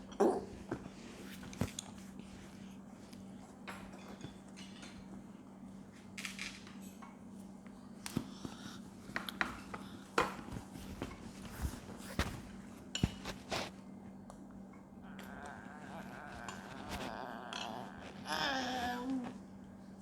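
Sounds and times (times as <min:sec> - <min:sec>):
faint steady hum: 0:00.0 - 0:20.0
eating noises: 0:15.0 - 0:19.3.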